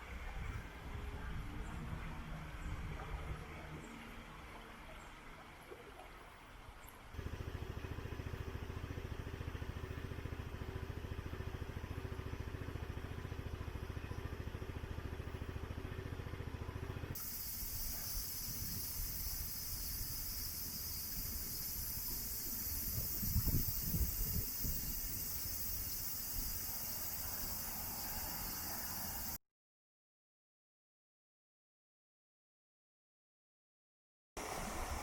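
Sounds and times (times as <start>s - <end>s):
high-pitched insect drone: 17.2s - 29.4s
stream water rushing: 34.4s - 35.0s.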